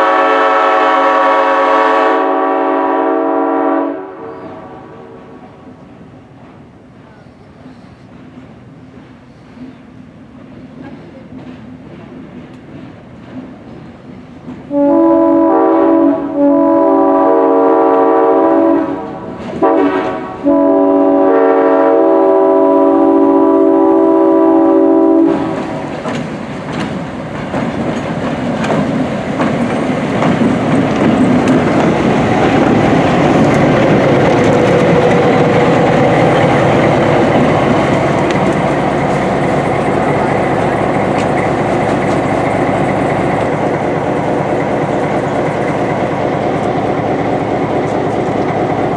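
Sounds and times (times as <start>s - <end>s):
railroad air horn blasts: 0.0s - 5.6s, 14.7s - 25.9s
train rumbling on rails: 0.0s - 48.9s.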